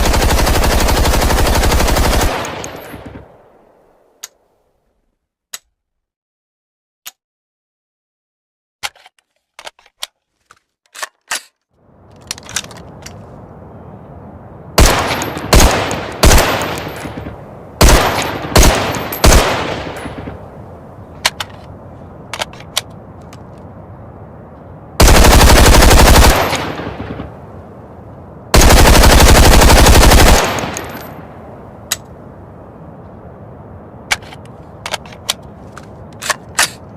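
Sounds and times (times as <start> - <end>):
automatic gunfire bursts: 0.0 - 2.6, 17.8 - 19.7, 25.0 - 27.0, 28.6 - 30.8
rifle clicks: 21.2 - 23.7, 34.1 - 36.9.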